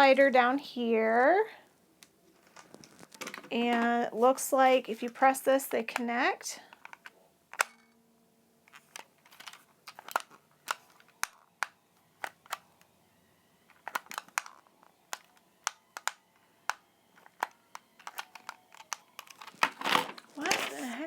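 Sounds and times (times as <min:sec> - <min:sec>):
plastic buttons clicking: 0:13.7 - 0:19.6.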